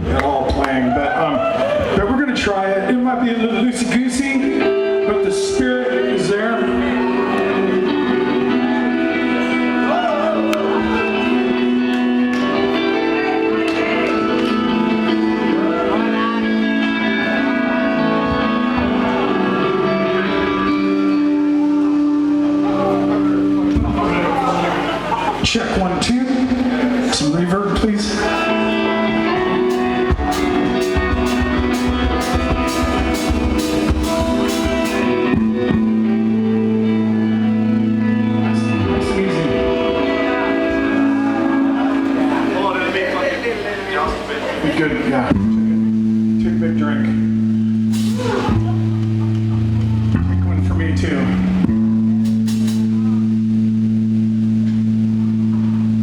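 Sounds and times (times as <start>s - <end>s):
electric guitar sustained notes: 0.0s - 56.0s
drum beat: 27.8s - 35.9s, 51.7s - 53.0s.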